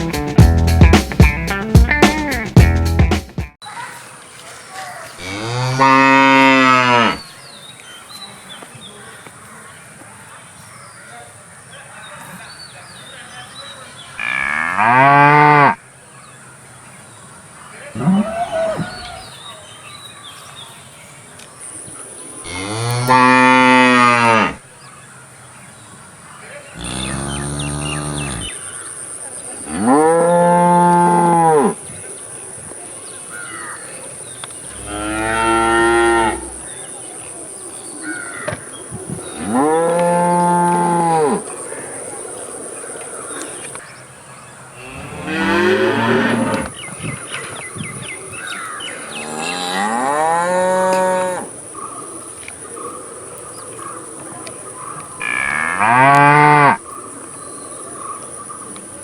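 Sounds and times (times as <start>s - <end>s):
cattle mooing: 22.5s - 24.6s, 26.8s - 28.6s, 34.7s - 36.7s, 39.4s - 41.4s, 55.2s - 56.8s.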